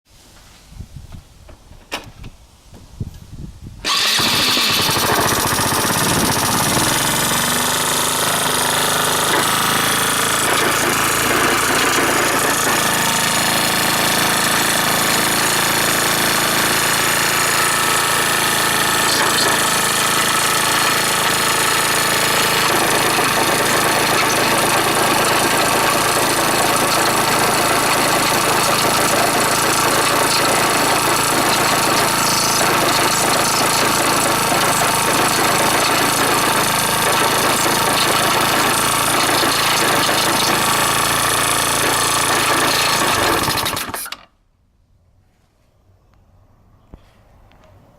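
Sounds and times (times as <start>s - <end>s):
mechanical rattle: 3.8s - 7.6s
scooter engine idling: 3.8s - 44.0s.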